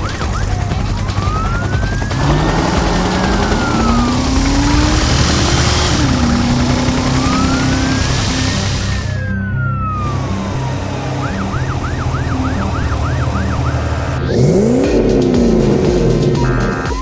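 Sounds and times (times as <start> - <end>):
background music: 0.0 - 17.0
fast siren-like wail: 1.1 - 17.0
rising swoop: 2.1 - 17.0.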